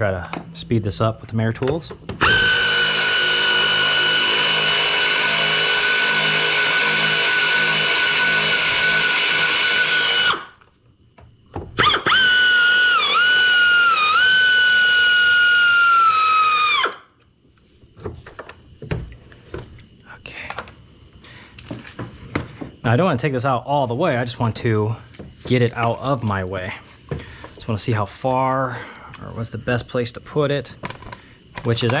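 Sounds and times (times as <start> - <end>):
power drill whining: 2.2 - 10.6, 11.8 - 17.0.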